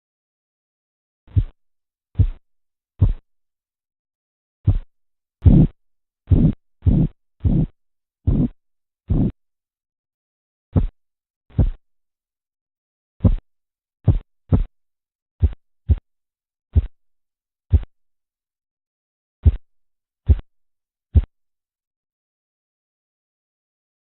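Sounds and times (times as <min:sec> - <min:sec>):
heartbeat thumps through stethoscope: 0:01.3 - 0:01.6, 0:02.2 - 0:02.4, 0:03.0 - 0:03.3, 0:04.6 - 0:09.4, 0:10.7 - 0:11.8, 0:13.2 - 0:14.7, 0:15.4 - 0:16.1, 0:16.7 - 0:17.0, 0:17.7 - 0:18.0, 0:19.4 - 0:19.7, 0:20.3 - 0:20.5, 0:21.2 - 0:21.4.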